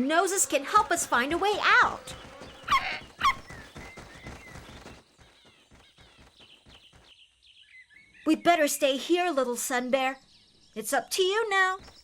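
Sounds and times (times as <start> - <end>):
faint bird chirps: 0.2 - 12.0
cartoon quick footsteps: 0.7 - 7.2.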